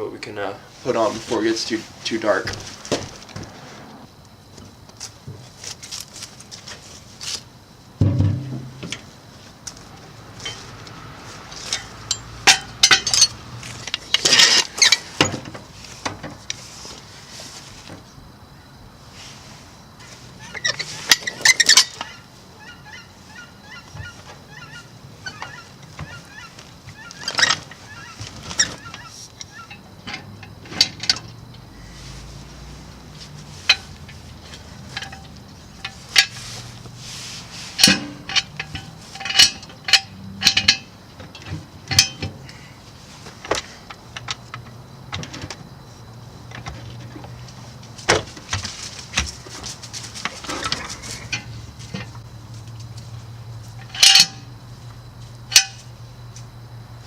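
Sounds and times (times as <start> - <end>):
metal tools clinking: 10.4 - 15.5, 20.5 - 22.1, 33.2 - 36.8, 37.7 - 42.3, 50.2 - 52.2, 53.6 - 54.5, 55.5 - 55.9.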